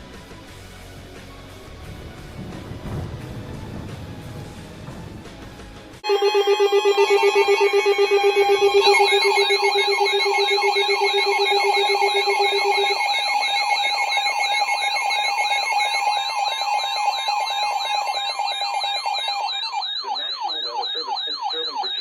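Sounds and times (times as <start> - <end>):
pulsing low beep: 6.0 - 22.0
weather alert radio alarms: 6.0 - 22.0.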